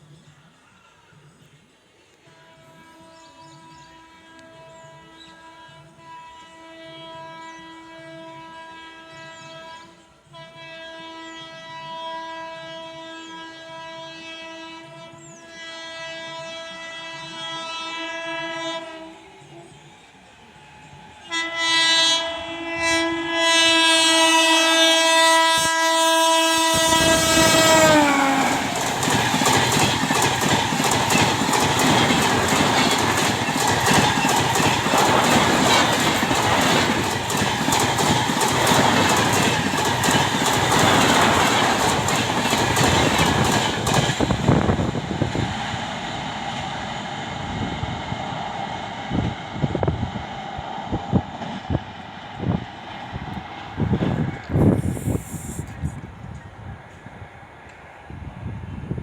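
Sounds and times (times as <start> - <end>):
locomotive air horn: 2.2 - 19.6, 21.2 - 29.4, 54.6 - 56.0
train coaches rattling past: 24.9 - 58.3
wheels clicking over rail joints: 27.7 - 44.4.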